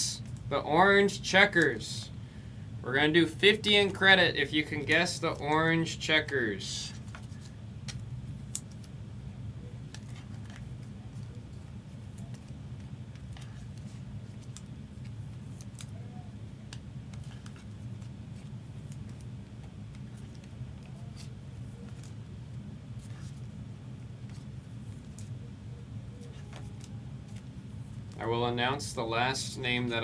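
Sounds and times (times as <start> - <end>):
rustling of cards in sleeves: 0.0 - 30.0
steady low hum: 0.0 - 30.0
light clicks of cards: 6.9 - 9.0, 9.7 - 23.6, 24.2 - 28.2.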